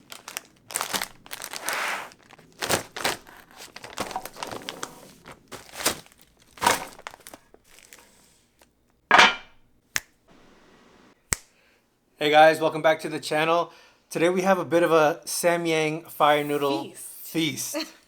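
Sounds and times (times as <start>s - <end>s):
crinkling and crumpling rustles: 0.0s - 8.7s.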